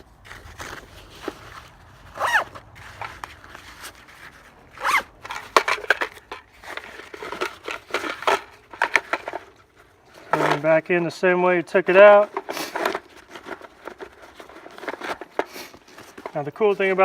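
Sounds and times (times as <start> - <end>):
bag rustling: 0.0 - 10.8
zipper-like sweeps: 2.1 - 2.6.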